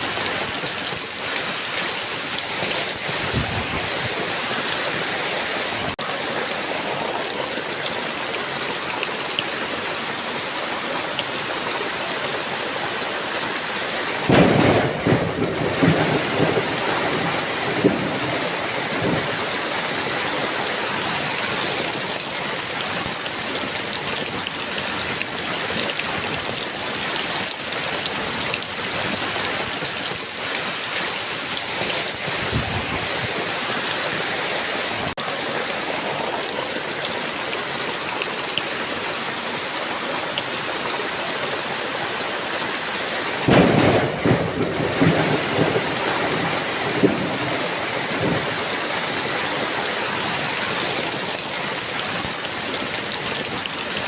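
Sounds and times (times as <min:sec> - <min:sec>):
heavy rain falling: 0:00.0 - 0:54.0
distant thunder rumble: 0:14.3 - 0:19.5, 0:43.4 - 0:48.7
thunderclap rumbling: 0:14.3 - 0:19.5, 0:43.4 - 0:48.8.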